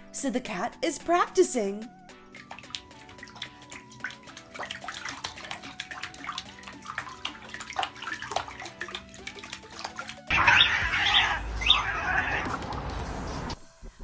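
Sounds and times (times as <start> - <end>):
cat splashing water: 2.2 - 12.4.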